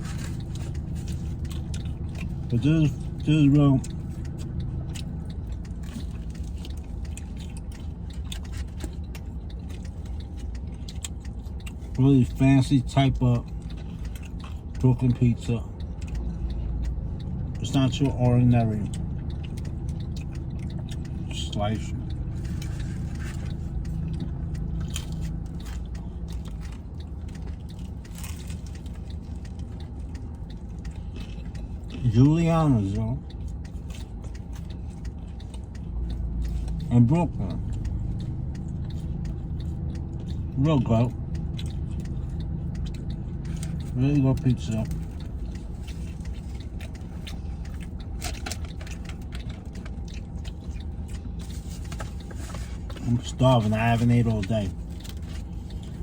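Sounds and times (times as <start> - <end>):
person chewing crunchy food: 0.0 - 56.0
steady low hum: 0.0 - 56.0
low rumble: 15.6 - 32.0, 33.2 - 56.0.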